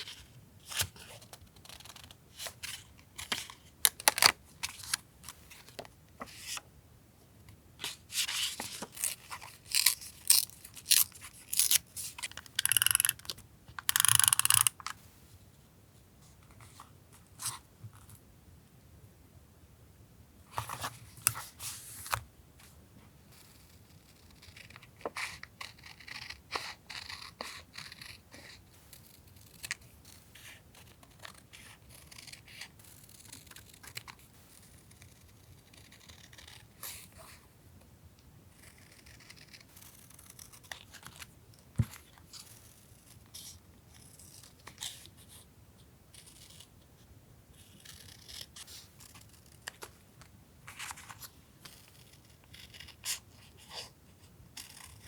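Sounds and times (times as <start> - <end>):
scissors snipping paper: 7.9 - 14.8, 24.0 - 37.0.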